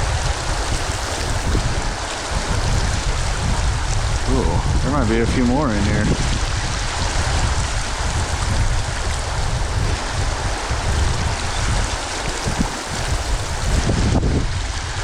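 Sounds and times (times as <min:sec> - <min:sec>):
stream water rushing: 0:00.0 - 0:15.0
wind rumble on microphone: 0:00.0 - 0:15.0.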